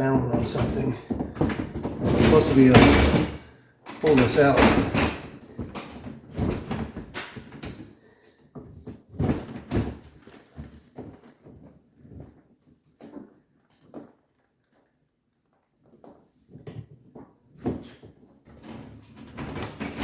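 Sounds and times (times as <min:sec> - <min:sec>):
plastic drawer knocking and rattling: 0:00.0 - 0:08.0, 0:16.5 - 0:20.0.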